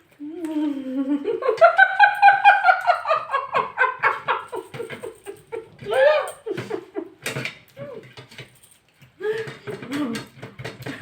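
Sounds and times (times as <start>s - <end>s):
person laughing: 0.5s - 7.2s.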